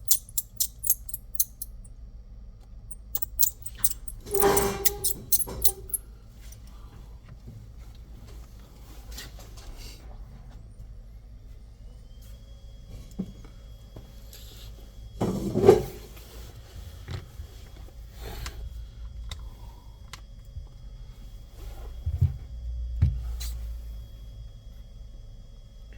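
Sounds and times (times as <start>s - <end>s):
objects clicking on work surface: 0.0s - 1.8s, 2.9s - 6.0s.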